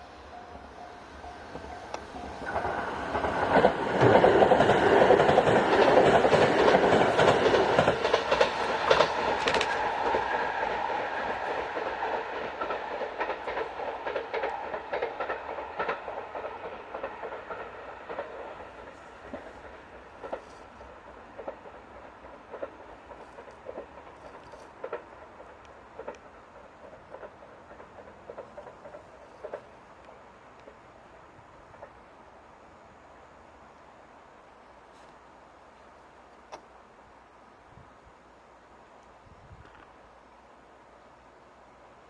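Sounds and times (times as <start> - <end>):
train passing at speed: 0.0 - 42.0
wheels clattering over rail joints: 1.2 - 30.9.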